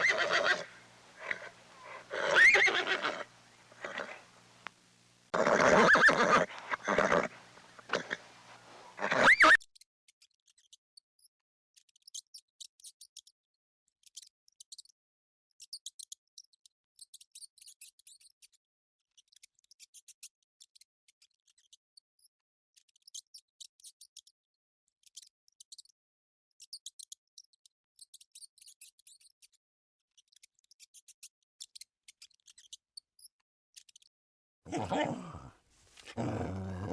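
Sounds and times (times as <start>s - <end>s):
animal call: 0.0s - 4.4s, 5.4s - 9.6s, 34.7s - 36.9s.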